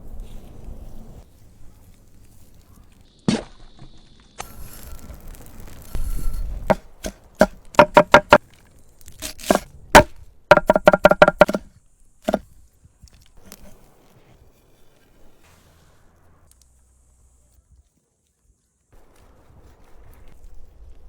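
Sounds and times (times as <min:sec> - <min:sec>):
knife chopping on board: 0:06.7 - 0:08.4, 0:09.2 - 0:11.7.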